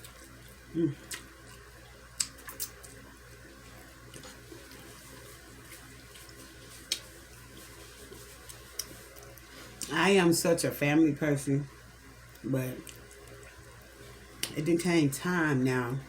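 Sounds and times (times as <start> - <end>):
mouth clicks and smacks: 0.8 - 1.3, 6.9 - 7.1.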